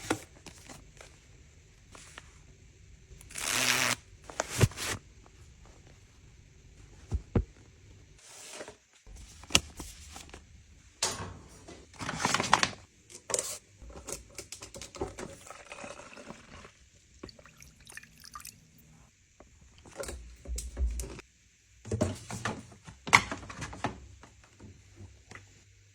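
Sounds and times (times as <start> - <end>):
liquid pouring into container: 15.2 - 18.8.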